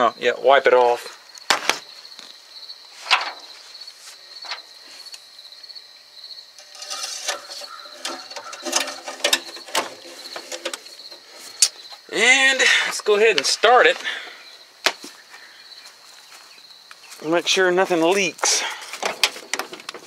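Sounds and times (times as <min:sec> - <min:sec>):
crickets chirping: 0:00.0 - 0:20.0
metallic clicks and clunks: 0:06.6 - 0:11.8, 0:19.0 - 0:20.0.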